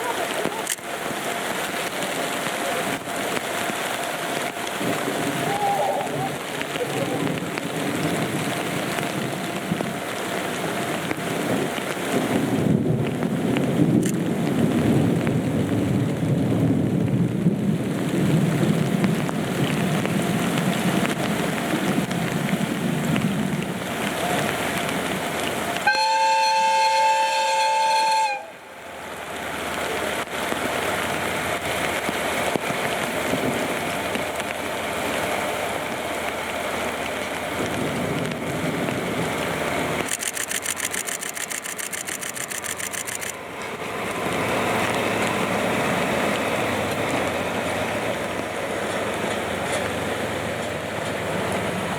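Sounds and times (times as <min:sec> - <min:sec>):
heavy rain hissing: 0:00.0 - 0:51.9
locomotive horn: 0:25.8 - 0:28.7.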